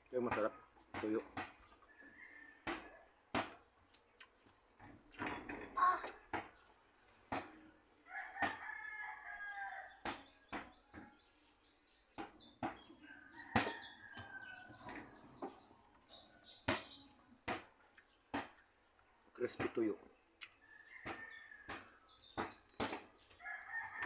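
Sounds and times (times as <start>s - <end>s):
rooster crowing: 1.9s - 3.0s, 8.0s - 10.1s, 13.0s - 15.2s, 20.6s - 21.9s, 23.4s - 24.0s.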